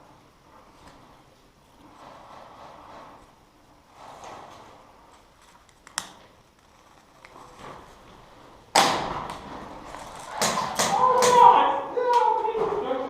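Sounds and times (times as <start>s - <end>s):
airsoft guns firing: 8.7s - 11.6s.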